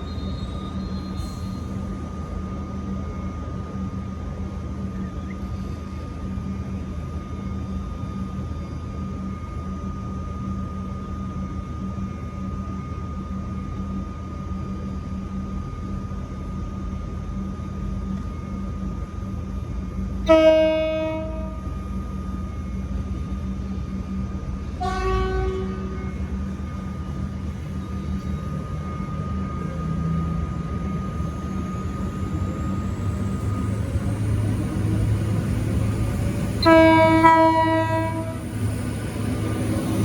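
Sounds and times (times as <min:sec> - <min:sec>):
diesel train hum: 0:00.0 - 0:40.0
train horn blasts: 0:20.2 - 0:21.9, 0:24.8 - 0:26.2, 0:36.6 - 0:38.5.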